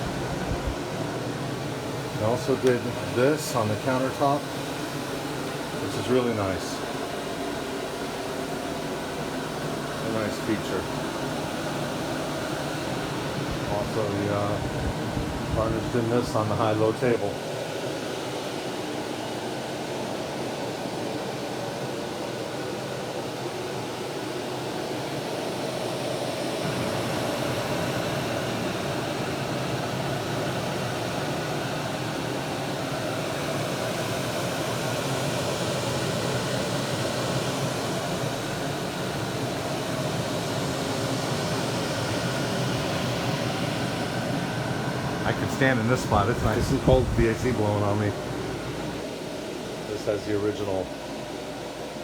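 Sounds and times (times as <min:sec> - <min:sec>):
low hum: 0:00.0 - 0:03.2
air conditioning blowing: 0:00.0 - 0:52.0.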